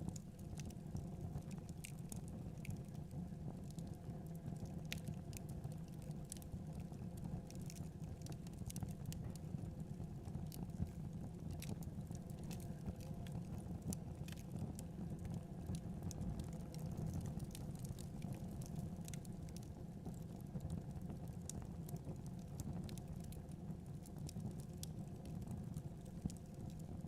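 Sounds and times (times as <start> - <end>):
low rumble of flames: 0.0 - 27.0
logs crackling and popping: 4.6 - 6.8, 7.4 - 9.5, 10.2 - 26.9.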